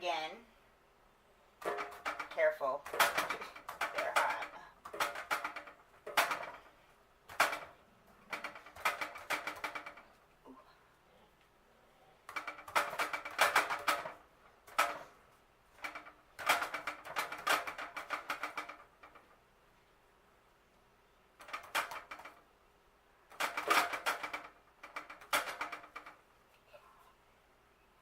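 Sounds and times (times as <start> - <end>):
utensil tapping baking pan: 1.6 - 6.6.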